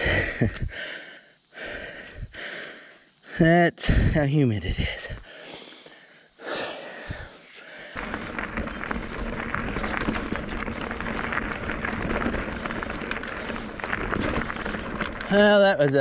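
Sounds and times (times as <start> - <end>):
bike tyre and wind noise: 0.0 - 0.9, 1.6 - 2.5, 7.0 - 16.0
bike rattling clicks: 8.0 - 16.0.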